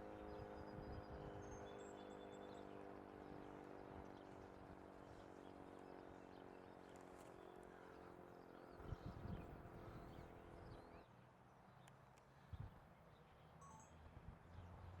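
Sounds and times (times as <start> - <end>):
faint high bird chirps: 13.6 - 14.0.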